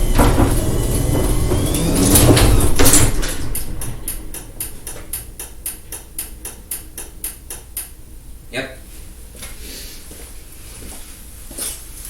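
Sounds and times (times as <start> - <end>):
door rumbling along track: 0.0 - 7.8
garage door opener running: 0.0 - 8.2
even ticking: 0.1 - 8.1.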